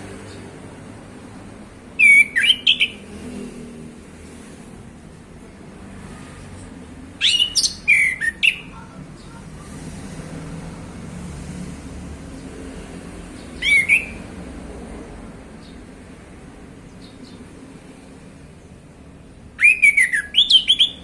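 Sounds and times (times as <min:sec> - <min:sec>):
bird whistling song: 0:02.0 - 0:03.0, 0:07.2 - 0:08.8, 0:13.6 - 0:14.3, 0:19.6 - 0:21.0.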